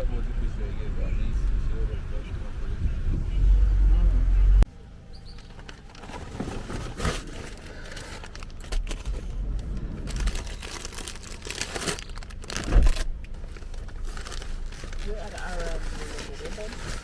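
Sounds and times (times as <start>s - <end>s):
plastic bags rustling: 5.5s - 17.0s.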